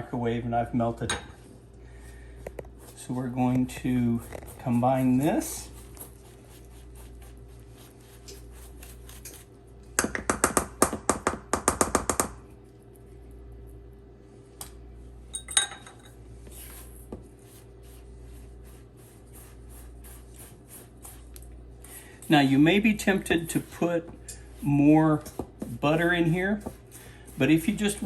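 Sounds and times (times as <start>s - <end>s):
utensil scraping bowl: 2.5s - 9.5s, 22.0s - 28.0s.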